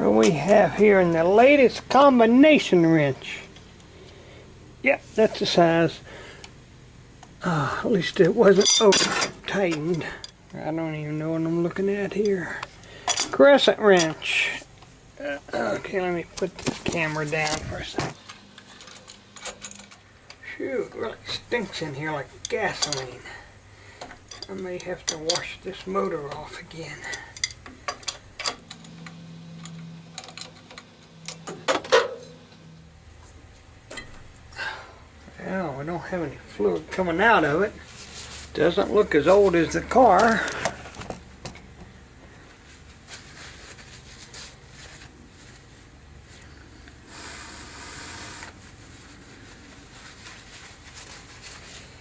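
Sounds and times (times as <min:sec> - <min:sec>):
faint low hum: 0:00.0 - 0:52.0
metal wrenches clinking: 0:08.4 - 0:10.4, 0:12.2 - 0:13.4, 0:22.4 - 0:23.2, 0:24.2 - 0:25.6.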